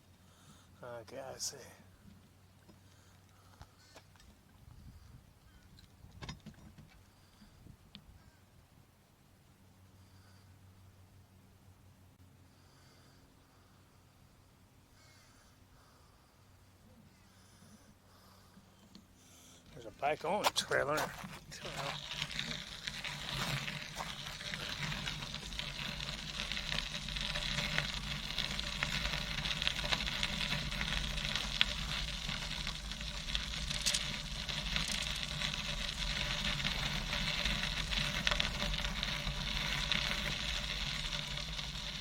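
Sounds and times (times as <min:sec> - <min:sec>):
bicycle tyres rolling on gravel: 0:19.7 - 0:42.0.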